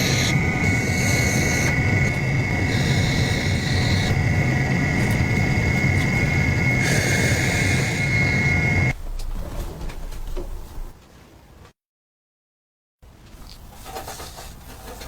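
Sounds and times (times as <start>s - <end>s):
power tool motor whining: 0.0s - 8.9s.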